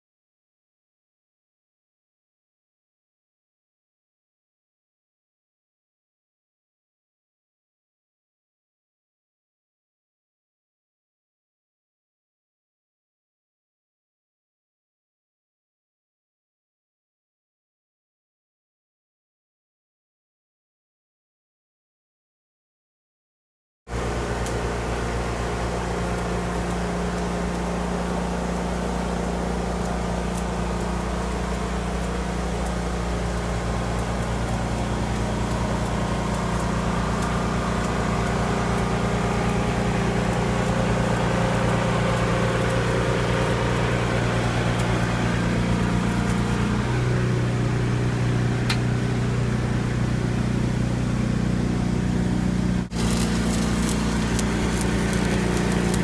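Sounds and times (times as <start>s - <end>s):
engine humming: 23.9s - 56.0s.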